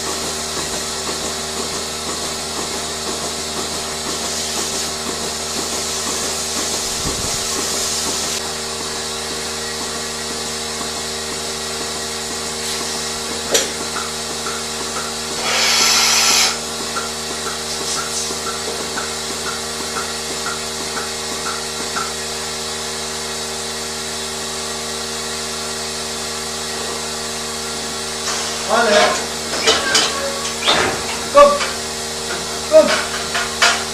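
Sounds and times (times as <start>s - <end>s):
farm machinery hum: 0.0s - 33.9s
hissing air burst: 15.4s - 16.6s
faint short squeaks: 29.6s - 31.2s.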